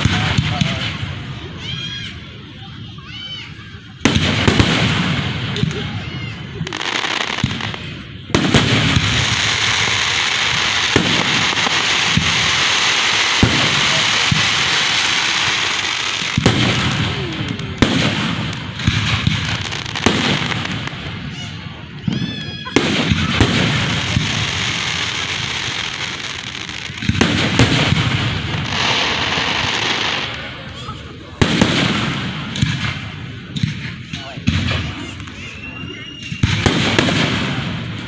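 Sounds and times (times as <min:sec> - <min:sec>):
firework bangs: 0:00.0 - 0:38.0
firework crackling: 0:00.0 - 0:38.0
firework whistle: 0:33.8 - 0:38.0.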